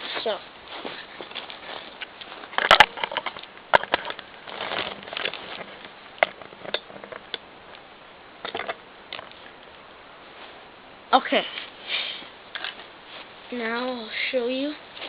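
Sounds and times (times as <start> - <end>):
bricks rattling rustles: 1.2 - 7.5, 8.4 - 9.6.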